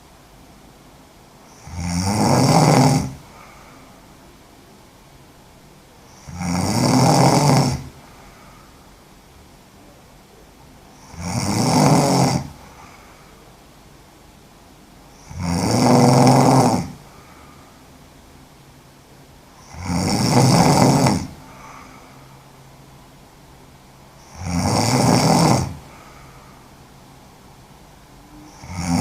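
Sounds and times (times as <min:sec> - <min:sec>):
quiet breathing: 0:00.0 - 0:29.0
woman snoring: 0:01.4 - 0:04.0, 0:06.0 - 0:08.7, 0:10.9 - 0:13.4, 0:15.1 - 0:17.8, 0:19.6 - 0:22.2, 0:24.2 - 0:26.7, 0:28.3 - 0:29.0.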